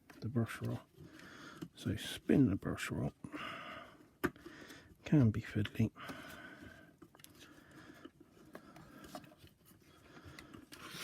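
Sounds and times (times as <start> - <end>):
faint rubbing of rubber belt: 7.2 - 11.0.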